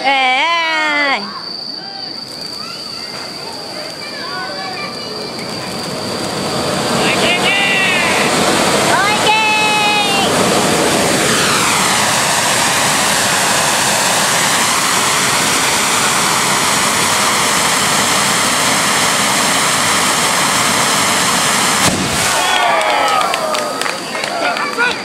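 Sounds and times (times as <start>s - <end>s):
voices: 0.0s - 11.3s, 22.3s - 25.0s
firework hissing sparks: 0.3s - 24.8s
firework bang: 2.2s - 23.6s.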